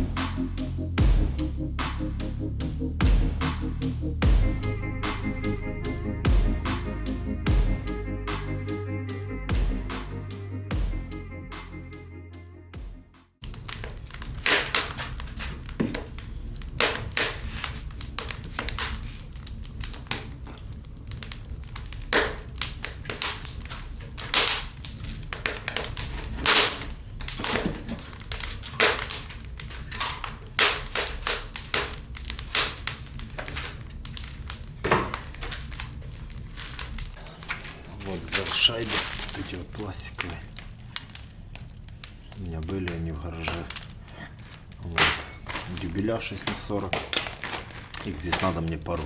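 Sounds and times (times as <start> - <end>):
crinkling: 13.4 - 49.0
small objects rummaged through: 13.4 - 49.0.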